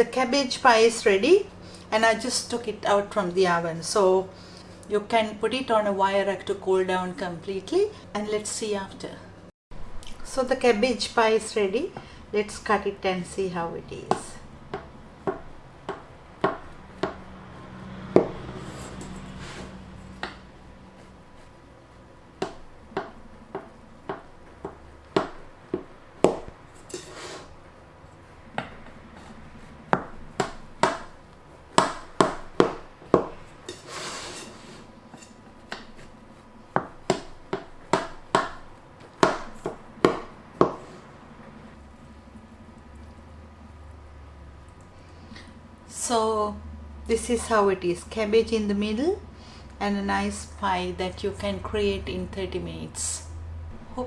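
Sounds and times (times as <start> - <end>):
utensil scraping a dish: 18.3 - 20.3, 26.8 - 27.6, 33.4 - 36.6.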